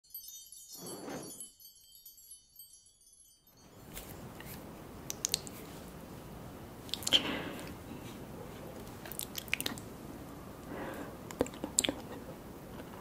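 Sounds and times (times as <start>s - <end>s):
chiming jingle: 0.0s - 4.4s
person chewing: 6.8s - 9.9s, 11.2s - 12.9s.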